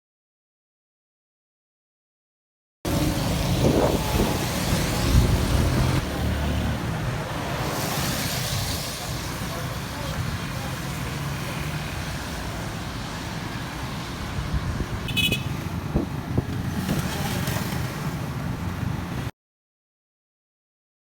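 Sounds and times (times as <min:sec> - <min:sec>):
road traffic rumble: 0:02.9 - 0:19.3
high horn toot: 0:15.1 - 0:15.6.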